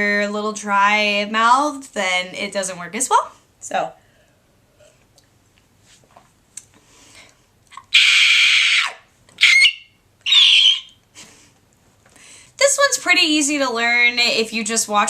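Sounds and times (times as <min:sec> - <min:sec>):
woman's inward scream: 0:07.9 - 0:11.0.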